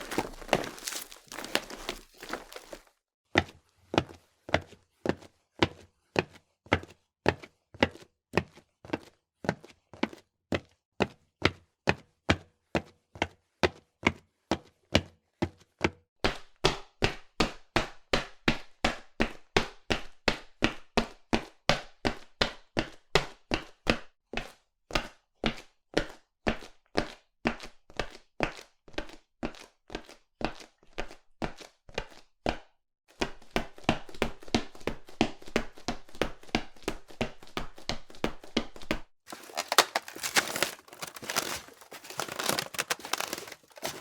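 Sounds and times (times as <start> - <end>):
footsteps: 0.0 - 2.9, 39.3 - 44.0.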